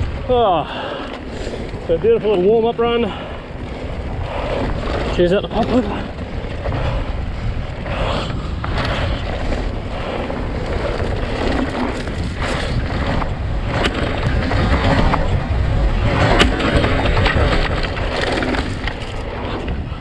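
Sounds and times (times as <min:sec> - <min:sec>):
mountain bike rattling on dirt trail: 0:00.0 - 0:20.0
wind buffeting microphone: 0:00.0 - 0:20.0
bike knocking over ground: 0:09.8 - 0:19.3.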